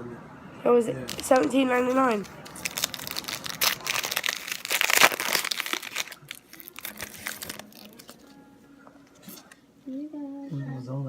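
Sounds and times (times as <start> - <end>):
wrapper crinkling and tearing: 1.0 - 8.3.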